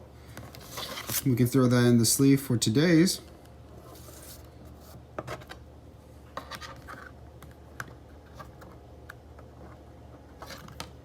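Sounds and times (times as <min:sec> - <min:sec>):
card scratching and rubbing: 0:03.8 - 0:05.5.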